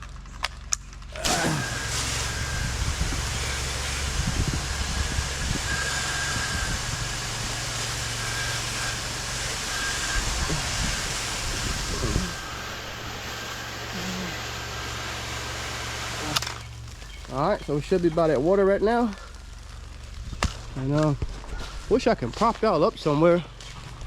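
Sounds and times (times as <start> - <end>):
spray hissing: 1.2 - 18.2
pressure washer engine hum: 1.2 - 20.0.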